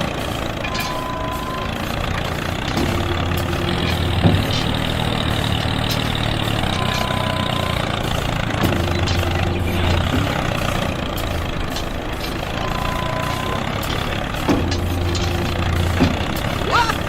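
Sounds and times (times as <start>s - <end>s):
engine idling: 0.0s - 17.0s
engine knock: 0.0s - 17.0s.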